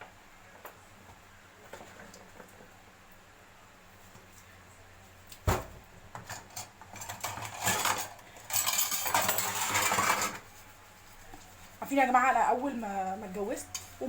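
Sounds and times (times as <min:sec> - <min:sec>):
dishes and cutlery clattering: 0:06.2 - 0:10.4.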